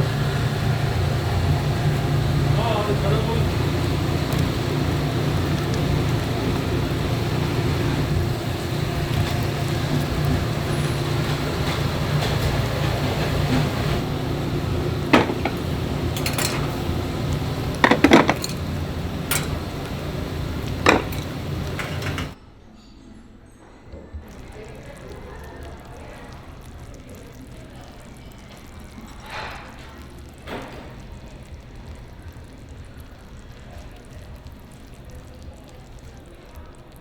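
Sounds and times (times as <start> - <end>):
steady low hum: 0.0 - 22.4
dishes and cutlery clinking: 15.1 - 22.4.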